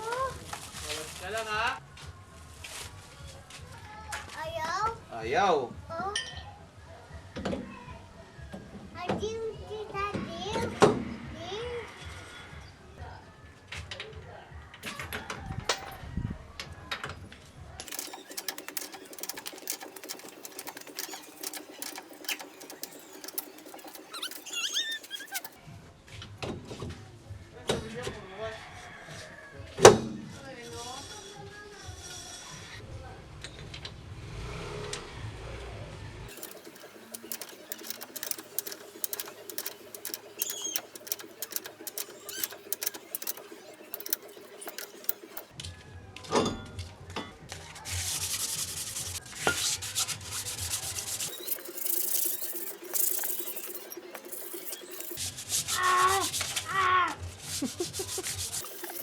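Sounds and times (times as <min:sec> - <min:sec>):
ratchet wrench clicking: 0:17.9 - 0:25.6, 0:36.3 - 0:45.5, 0:51.2 - 0:55.2, 0:58.2 - 0:59.0.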